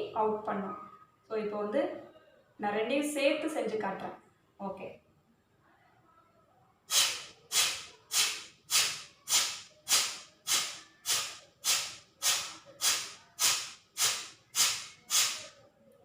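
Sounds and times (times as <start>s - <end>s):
forceful exhalations through nose: 6.9s - 15.6s.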